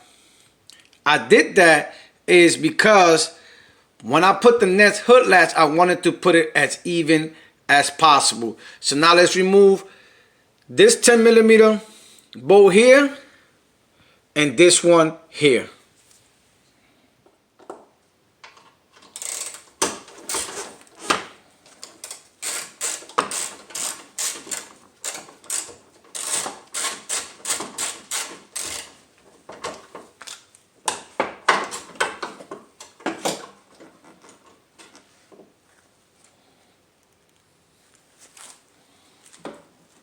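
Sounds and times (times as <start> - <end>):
ratchet clicking: 19.0 - 21.1, 22.0 - 29.0.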